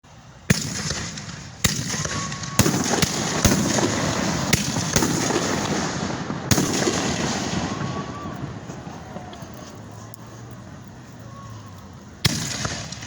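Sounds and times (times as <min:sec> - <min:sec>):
fireworks crackling: 0:00.1 - 0:13.0
fireworks bangs: 0:00.4 - 0:13.0.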